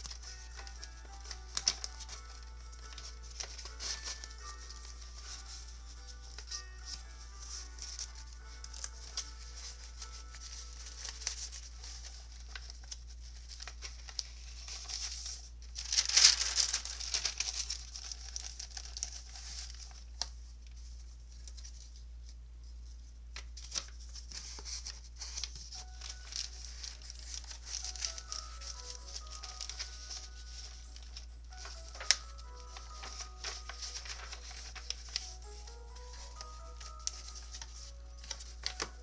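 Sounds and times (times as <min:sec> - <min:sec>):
paper pages rustling: 0:00.0 - 0:39.0
quiet background music: 0:00.0 - 0:39.0.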